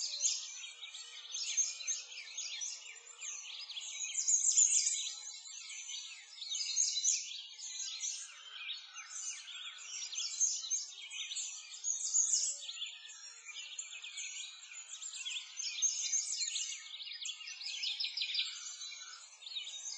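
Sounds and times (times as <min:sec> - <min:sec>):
small birds chirping: 0:00.0 - 0:19.9.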